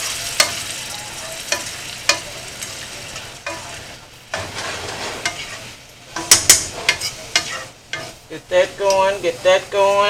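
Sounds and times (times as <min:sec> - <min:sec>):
broth sizzling in a skillet: 0:00.0 - 0:10.0
utensil clacking against a pan: 0:01.4 - 0:02.8, 0:03.4 - 0:09.2.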